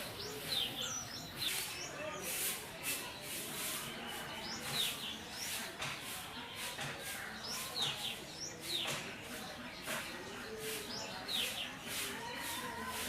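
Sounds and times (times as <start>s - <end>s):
bird chirping: 0.0s - 2.5s.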